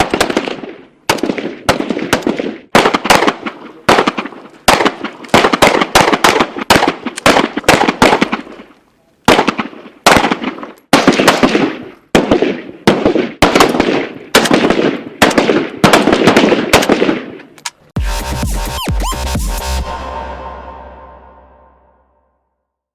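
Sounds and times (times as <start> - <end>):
electronic music with heavy bass: 18.0 - 22.2.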